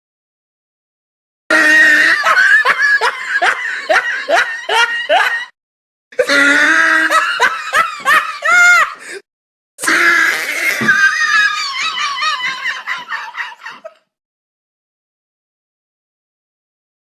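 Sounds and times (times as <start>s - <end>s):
rhythmic ha laughter: 1.8s - 5.6s, 7.1s - 8.8s, 11.0s - 14.1s.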